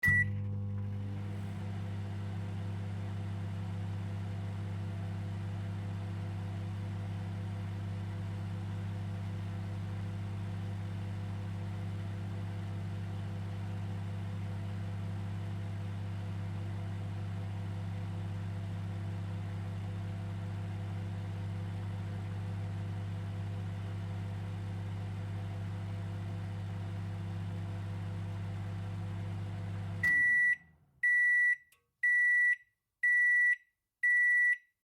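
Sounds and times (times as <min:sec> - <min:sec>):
microwave beep: 0:00.0 - 0:01.1, 0:30.0 - 0:34.7
microwave oven humming: 0:00.0 - 0:32.3.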